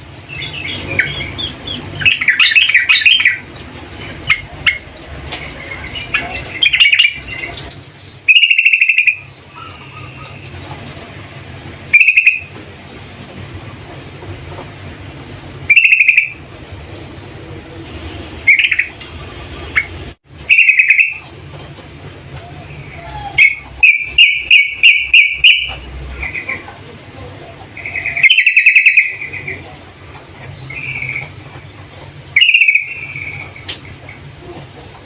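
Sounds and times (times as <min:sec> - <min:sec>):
steady low hum: 0:00.0 - 0:35.0
bird chattering: 0:00.2 - 0:35.0
bird calling bubbly phrases: 0:05.5 - 0:07.7.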